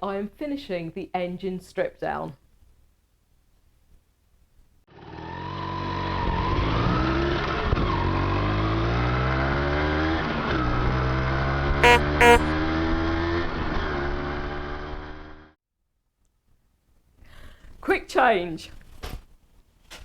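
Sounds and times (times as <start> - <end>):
short beeps: 11.8 - 12.5.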